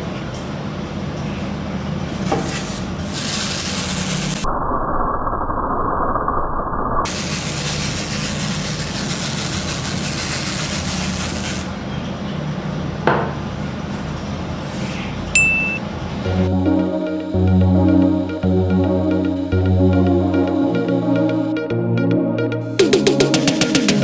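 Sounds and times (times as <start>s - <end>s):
small electric motor running: 7.1s - 11.7s.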